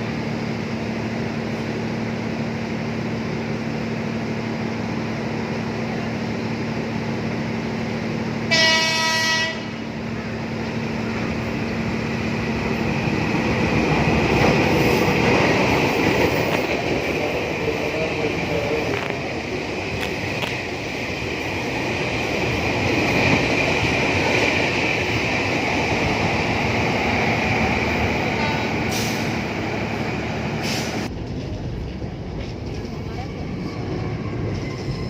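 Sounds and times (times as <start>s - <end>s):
train running on rails: 0.0s - 35.0s
train horn blast: 8.5s - 10.0s.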